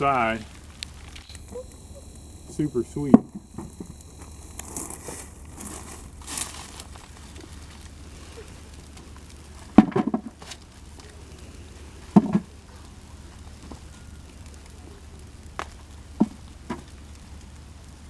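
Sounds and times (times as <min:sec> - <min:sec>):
hands rustling through soil: 0:00.2 - 0:09.7.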